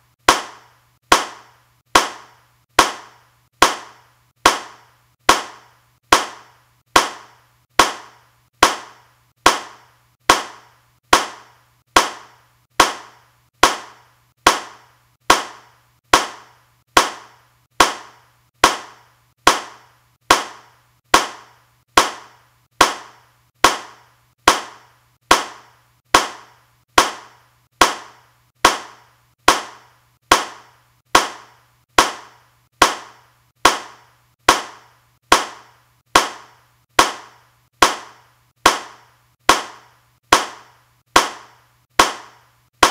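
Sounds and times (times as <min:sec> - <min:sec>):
hand clapping: 0:41.2 - 0:42.9.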